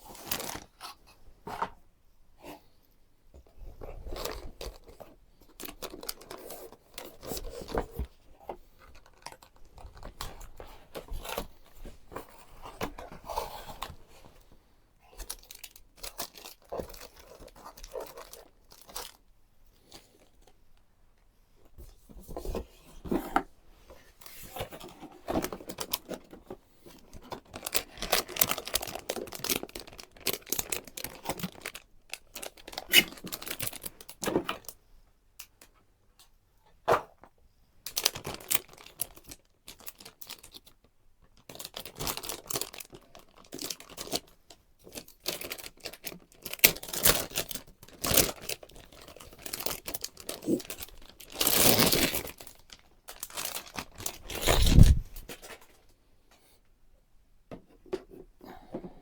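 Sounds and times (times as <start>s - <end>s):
packaging tearing and crinkling: 0.1s - 0.8s, 27.4s - 34.1s, 37.9s - 40.6s, 41.5s - 44.3s, 45.0s - 55.6s.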